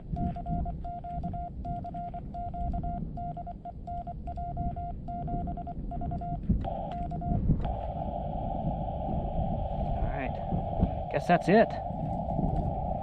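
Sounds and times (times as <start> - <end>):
morse code beeps: 0.0 - 7.8.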